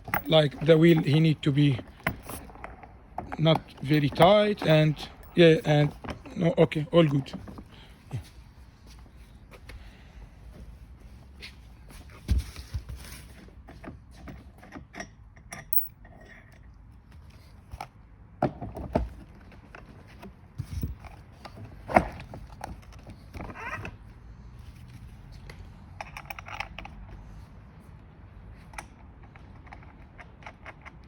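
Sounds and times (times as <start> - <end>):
metallic jingles of washers: 0.0 - 7.4, 15.6 - 16.0
clicks and knocks of wheel parts: 0.0 - 8.2, 25.4 - 27.3, 28.5 - 31.0.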